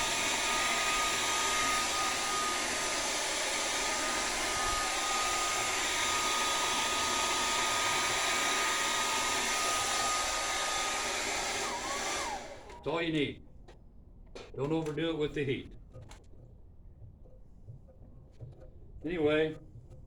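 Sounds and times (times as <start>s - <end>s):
blow dryer running: 0.0s - 13.0s.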